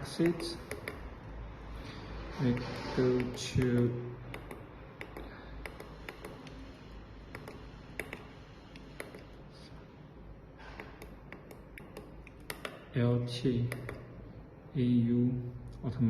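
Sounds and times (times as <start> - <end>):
push buttons clicking: 0.0 - 1.1, 2.6 - 6.6, 7.3 - 9.3, 10.8 - 12.9, 13.7 - 14.2.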